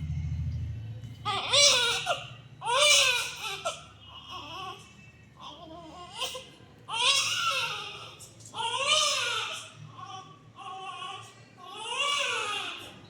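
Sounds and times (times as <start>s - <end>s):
baby crying: 1.3s - 4.8s.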